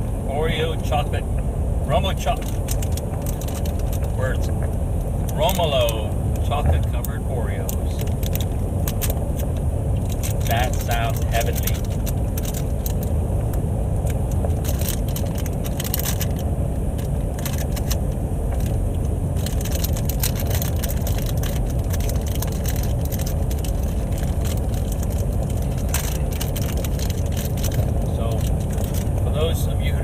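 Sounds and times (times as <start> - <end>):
car rumble: 0.0 - 30.0
snack package crinkling: 2.4 - 4.1, 8.0 - 13.1, 14.1 - 16.4, 17.0 - 18.0, 19.4 - 29.1.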